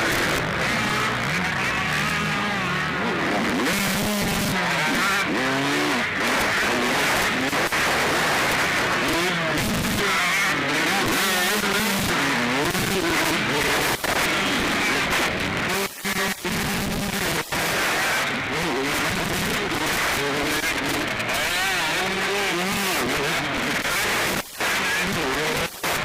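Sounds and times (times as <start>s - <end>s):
motocross engines revving: 0.0s - 26.0s.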